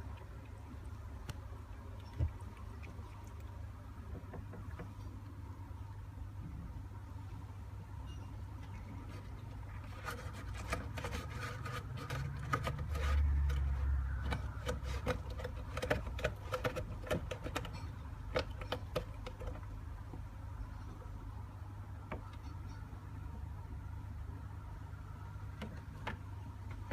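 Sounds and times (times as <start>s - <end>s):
cat lapping water: 0.0s - 3.8s
steady low hum: 0.0s - 26.9s.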